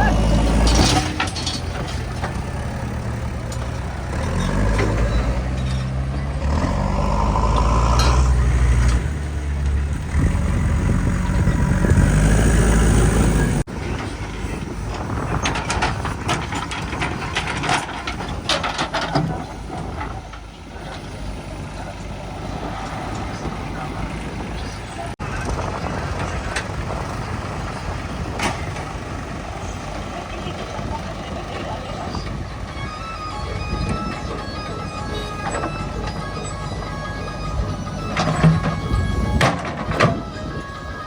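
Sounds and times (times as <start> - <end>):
metallic clanks and rattles: 0.0 - 6.8, 13.8 - 21.0, 33.6 - 41.0
diesel engine revving under load: 0.0 - 41.0.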